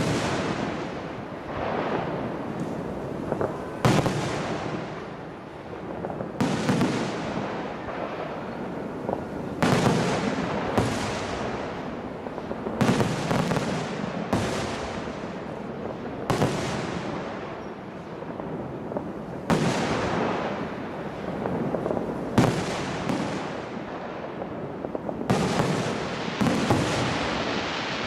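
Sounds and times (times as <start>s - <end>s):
fireworks bursting with echo: 0.0s - 28.0s.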